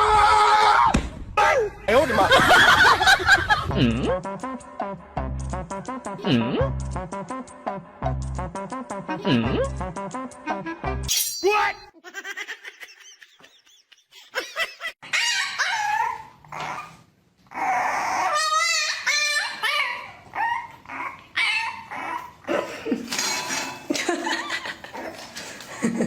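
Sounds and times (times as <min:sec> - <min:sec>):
dog whining and yipping: 0:15.0 - 0:22.4.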